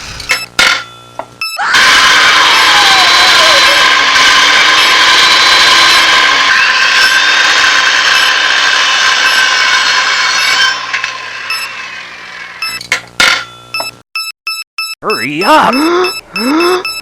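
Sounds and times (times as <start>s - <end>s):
power saw whining: 1.6s - 12.6s.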